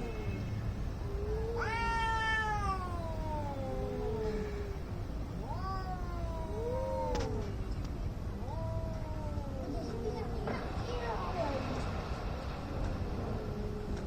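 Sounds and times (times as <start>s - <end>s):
cats caterwauling: 0.0s - 7.6s, 8.4s - 10.4s, 13.2s - 14.0s.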